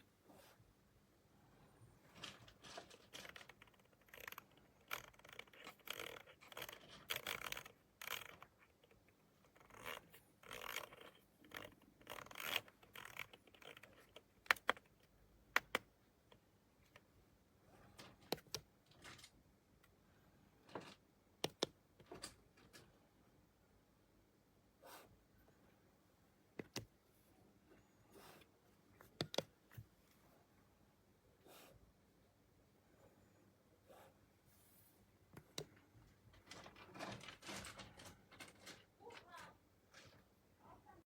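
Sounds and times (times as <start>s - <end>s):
scraping and rubbing handling noise: 1.5s - 19.4s, 33.2s - 40.4s.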